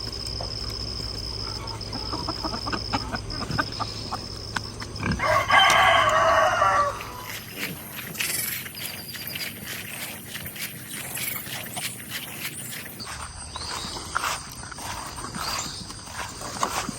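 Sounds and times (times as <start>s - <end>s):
chickens clucking: 0.8s - 16.9s
rooster crowing: 5.1s - 7.4s.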